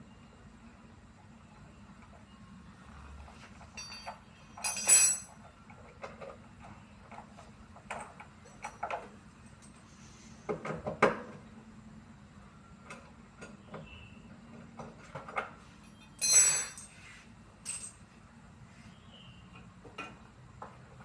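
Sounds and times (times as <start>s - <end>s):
metallic clinks of tools: 3.7s - 5.4s, 15.8s - 17.0s, 17.6s - 18.0s.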